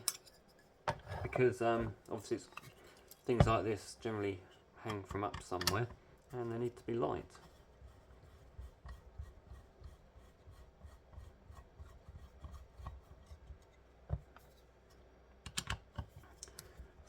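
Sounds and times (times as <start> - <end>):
rubbing and scraping on bench: 6.3 - 14.8.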